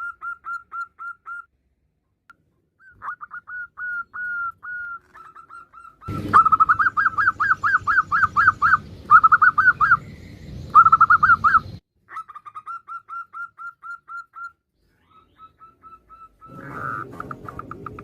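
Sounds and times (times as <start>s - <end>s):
dove chattering calls: 0.0s - 1.4s, 2.8s - 18.0s
background hum: 0.0s - 13.2s.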